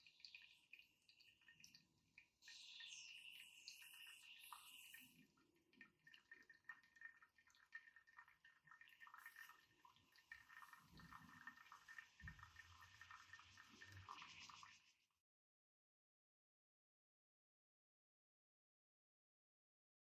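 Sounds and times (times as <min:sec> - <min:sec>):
espresso dripping into a cup: 0:00.0 - 0:14.1.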